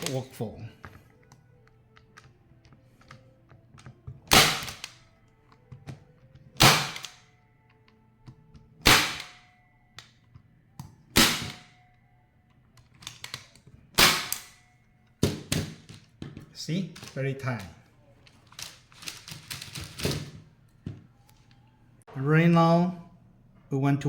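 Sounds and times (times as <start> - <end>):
staple gun firing: 4.3 - 5.0, 6.6 - 7.3, 8.8 - 9.4, 11.2 - 11.7, 14.0 - 14.6.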